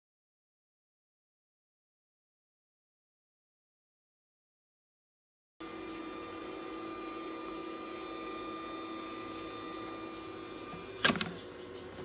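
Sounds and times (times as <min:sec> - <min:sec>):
ice cream maker humming: 0:05.6 - 0:12.0.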